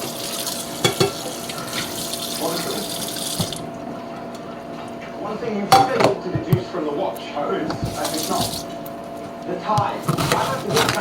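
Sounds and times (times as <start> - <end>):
tap running into a sink: 0.0 - 3.6, 7.8 - 8.7.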